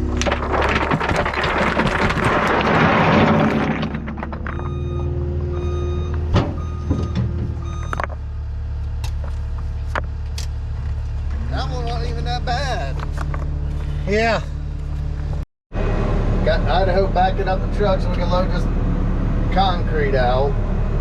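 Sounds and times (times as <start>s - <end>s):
rough rushing noise: 0.0s - 4.5s
heavy equipment engine running: 0.0s - 21.0s
backup alarm beeping: 4.5s - 8.0s.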